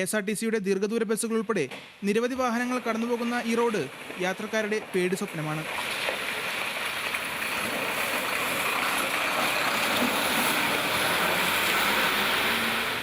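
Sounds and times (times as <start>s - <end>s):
tyres hissing on wet road: 5.2s - 13.0s.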